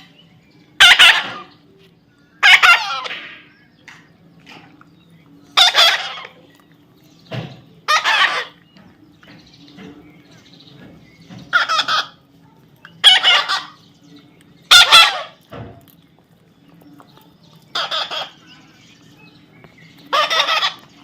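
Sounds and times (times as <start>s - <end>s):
parrot squawking: 0.8s - 1.6s, 2.4s - 3.3s, 5.6s - 6.4s, 7.8s - 8.6s, 11.5s - 12.2s, 13.0s - 13.9s, 14.7s - 15.4s, 17.7s - 18.8s, 20.1s - 21.0s.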